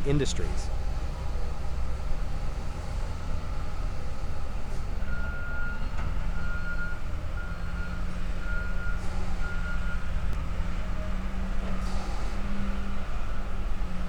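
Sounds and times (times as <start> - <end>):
reversing alarm beeping: 5.1 - 10.1.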